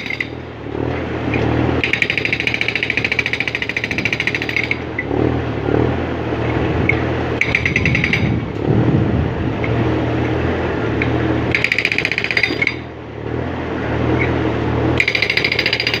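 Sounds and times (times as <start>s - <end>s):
hydraulic rock breaker hammering: 0.0s - 0.4s, 1.3s - 5.1s, 7.4s - 8.7s, 11.0s - 12.9s, 15.0s - 16.0s
excavator diesel engine drone: 0.0s - 16.0s.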